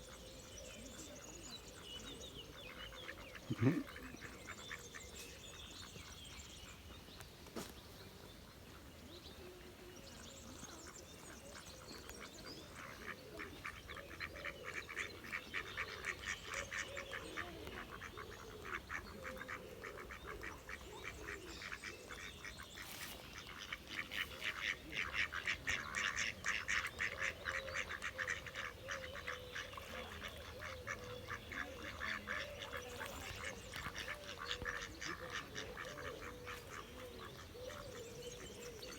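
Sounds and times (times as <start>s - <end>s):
ducks quacking: 2.7s - 5.1s, 12.6s - 38.9s.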